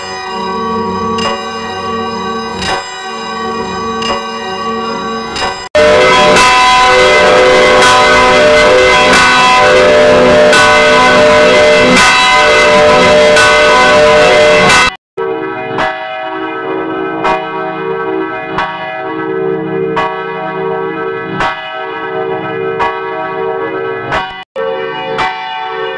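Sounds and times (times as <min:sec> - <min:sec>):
church bells ringing: 0:00.0 - 0:25.9.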